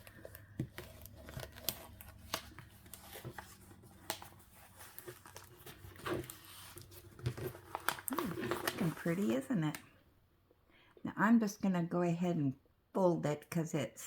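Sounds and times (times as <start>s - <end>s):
plastic cover crinkling: 0.0s - 9.5s.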